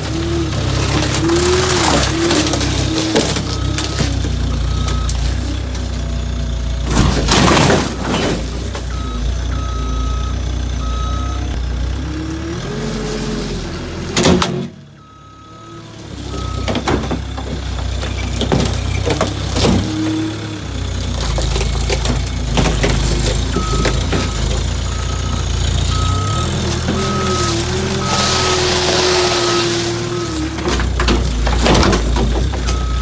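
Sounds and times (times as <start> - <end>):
knocks and crunches of metal: 0.0 - 10.4, 14.0 - 14.8, 16.0 - 33.0
diesel engine running: 0.0 - 33.0
backup alarm beeping: 3.4 - 5.5, 8.9 - 11.6, 23.5 - 28.6, 32.6 - 33.0
loud crash: 6.9 - 8.9.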